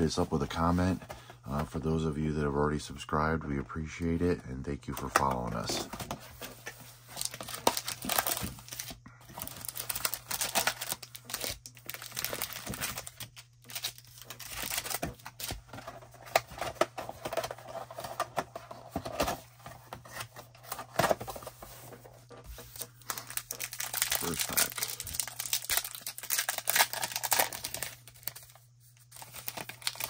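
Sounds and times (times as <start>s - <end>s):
plastic wrapping tearing and crinkling: 7.1s - 15.6s, 22.8s - 30.0s.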